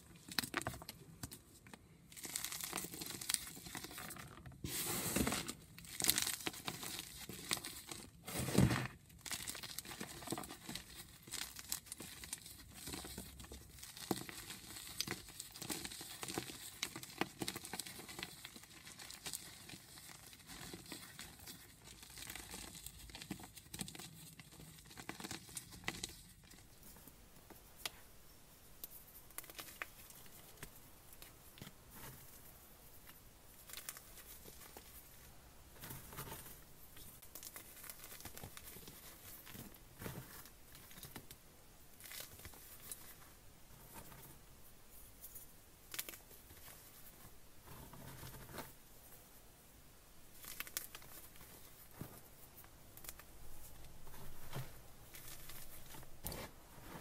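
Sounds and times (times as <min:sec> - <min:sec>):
chalk crunching and crackling: 0:28.8 - 0:41.4.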